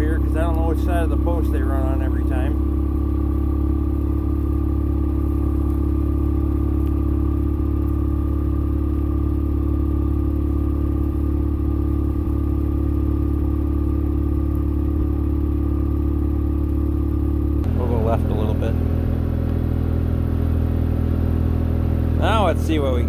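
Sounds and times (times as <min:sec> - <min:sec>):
engine running at low speed: 0:00.0 - 0:23.0.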